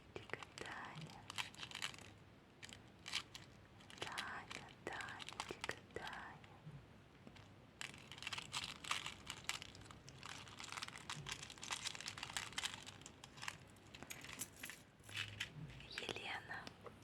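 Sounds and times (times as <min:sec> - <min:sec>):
jewelry clicking and rattling: 0:07.8 - 0:16.3.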